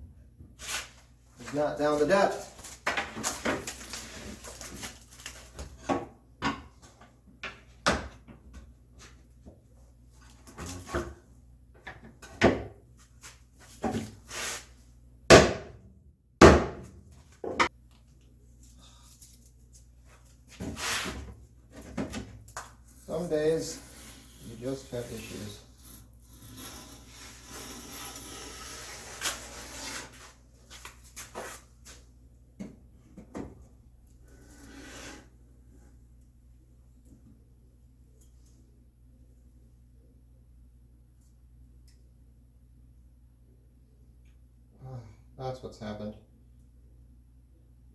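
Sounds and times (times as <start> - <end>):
plane scraping wood: 23.6 - 30.3, 34.5 - 35.3.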